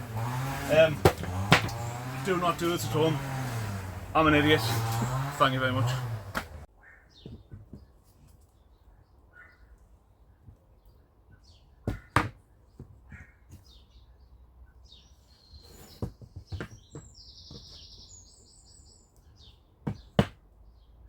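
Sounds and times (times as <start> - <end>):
small birds chirping and trilling: 1.8 - 21.0.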